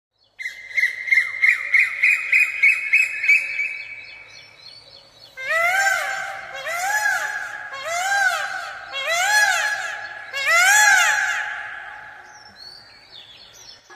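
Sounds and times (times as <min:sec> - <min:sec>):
peacock calling: 0:05.2 - 0:13.9.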